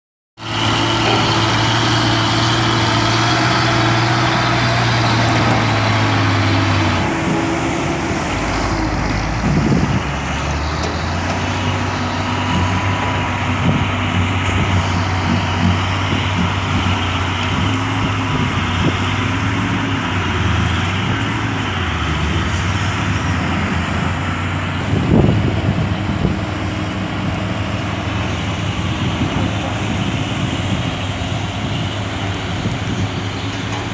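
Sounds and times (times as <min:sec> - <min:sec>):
excavator diesel engine working: 0:00.4 - 0:33.9.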